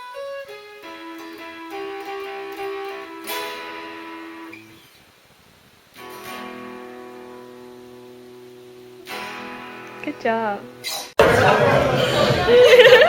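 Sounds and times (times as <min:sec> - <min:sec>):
guitar chord strummed: 0:00.0 - 0:04.8, 0:06.0 - 0:11.0
guitar picked notes: 0:00.0 - 0:05.0, 0:05.9 - 0:11.2.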